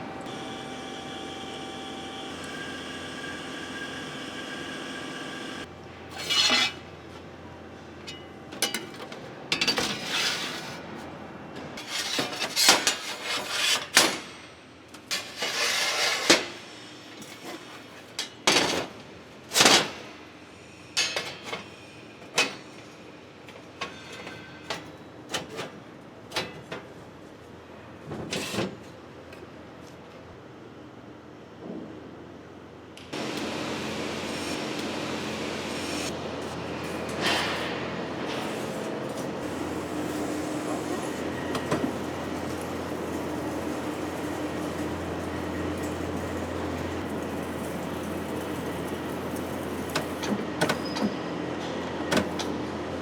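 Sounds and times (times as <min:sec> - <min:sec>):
machine hum: 0:39.0 - 0:50.2.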